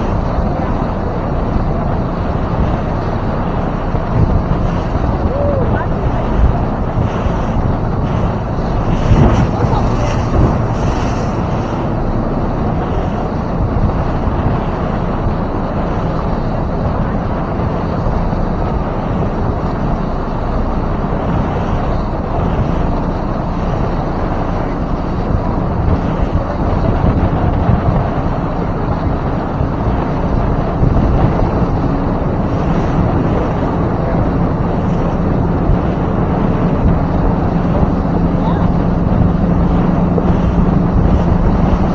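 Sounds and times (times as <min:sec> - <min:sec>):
motorboat engine hum: 0:00.0 - 0:41.9
water noise: 0:00.0 - 0:41.9
wind rushing on microphone: 0:00.0 - 0:41.9.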